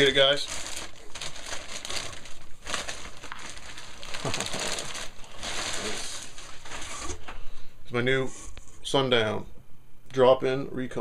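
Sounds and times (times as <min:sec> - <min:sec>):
plastic packaging crinkling: 0:00.0 - 0:07.2.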